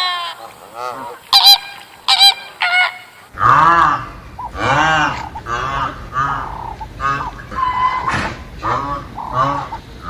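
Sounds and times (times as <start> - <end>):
geese honking: 0.0 - 10.0
steady background rumble: 3.2 - 10.0.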